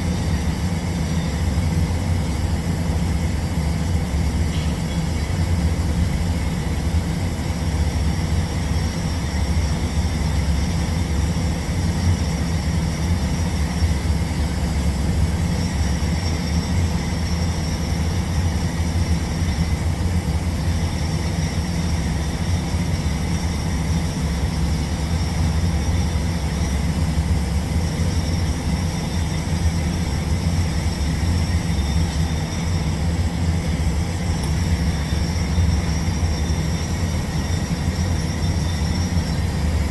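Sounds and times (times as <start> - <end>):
faint high whine: 0.0 - 39.9
welding equipment humming: 28.8 - 39.9.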